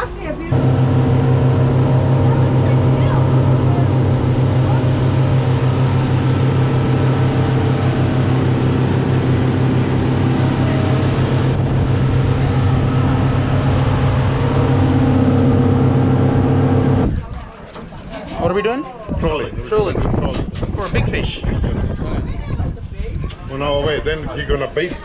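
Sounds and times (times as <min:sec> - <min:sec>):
motorboat engine droning: 0:00.0 - 0:17.2.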